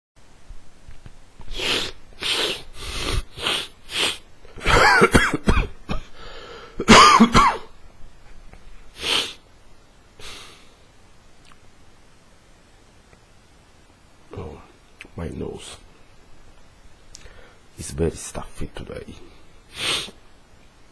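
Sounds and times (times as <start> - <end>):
person blowing stuffy nose: 1.4 - 4.2, 8.9 - 9.4, 10.2 - 10.6, 19.7 - 20.2.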